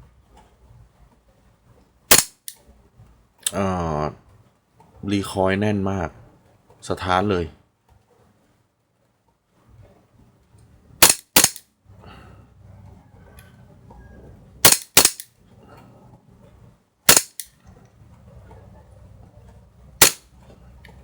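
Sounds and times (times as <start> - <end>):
airsoft pistol shots: 2.1 - 2.5, 11.0 - 11.6, 14.6 - 15.3, 17.1 - 17.5, 20.0 - 20.2.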